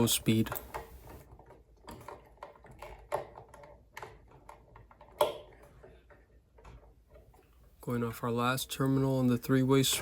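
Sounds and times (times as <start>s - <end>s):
hand tools clicking and tapping: 0.0s - 5.7s.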